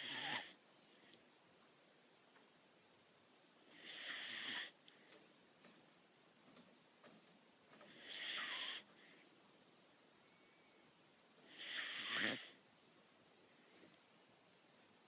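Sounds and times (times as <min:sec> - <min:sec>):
puppy snoring: 0:00.0 - 0:00.6, 0:03.6 - 0:04.8, 0:07.8 - 0:08.9, 0:11.4 - 0:12.6.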